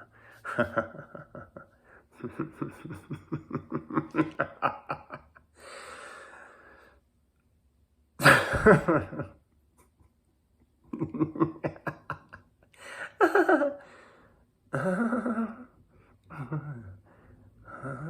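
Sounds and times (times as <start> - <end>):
person laughing: 0.5 - 5.5, 8.2 - 9.4, 10.9 - 13.8, 14.7 - 17.0.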